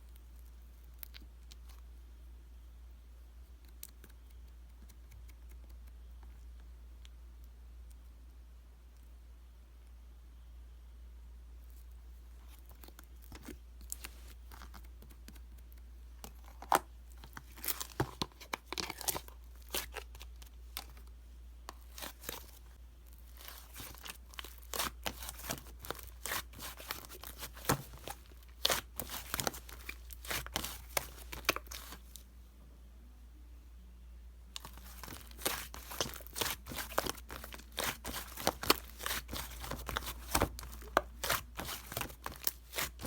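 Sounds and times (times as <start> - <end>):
faint low hum: 0.0 - 43.0
crisp material crackling: 34.6 - 43.0.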